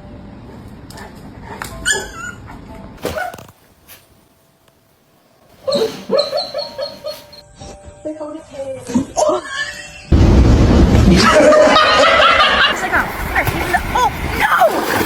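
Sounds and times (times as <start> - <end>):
dog whimpering and yipping: 1.7 - 3.4, 5.6 - 7.4
low rumbling noise: 10.1 - 14.6.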